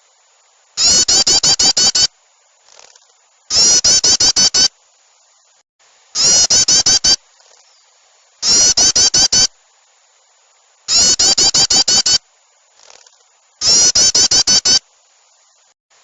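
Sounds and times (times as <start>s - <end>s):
bulbul chattering: 0.8s - 2.1s, 2.7s - 4.7s, 6.2s - 9.5s, 10.9s - 12.2s, 12.8s - 14.8s
faint small-bird chirps: 0.8s - 4.7s, 6.2s - 10.3s, 10.9s - 15.8s.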